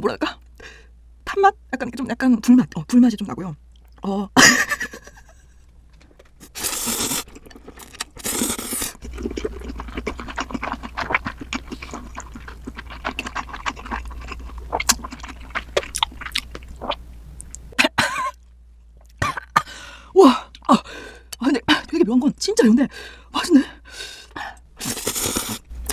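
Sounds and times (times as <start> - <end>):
chewing noodles with wet smacks: 6.6 - 17.6.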